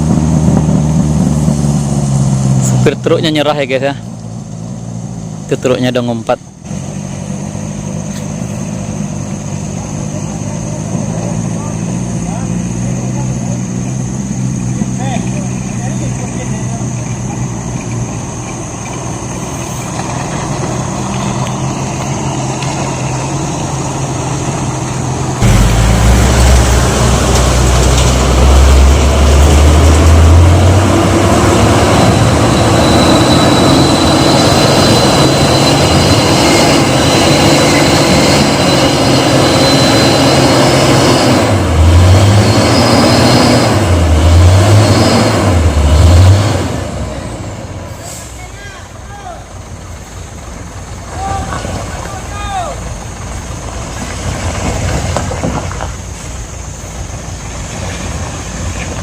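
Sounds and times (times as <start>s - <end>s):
loud low engine rumble: 0.0s - 59.0s
vehicle engines running: 0.0s - 59.0s
engine revving: 6.6s - 47.9s.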